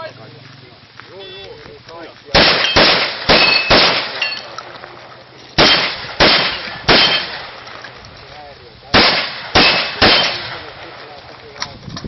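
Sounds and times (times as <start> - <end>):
shotgun shots: 2.3 - 4.6, 5.6 - 7.8, 8.9 - 11.2
steel targets ringing: 2.4 - 4.6, 5.6 - 7.8, 9.2 - 10.6.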